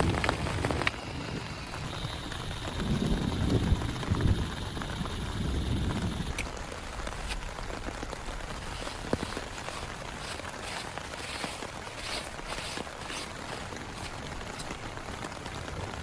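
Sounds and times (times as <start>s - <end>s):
sharp drops ticking: 0.0s - 6.6s
heavy rain falling: 0.0s - 16.0s.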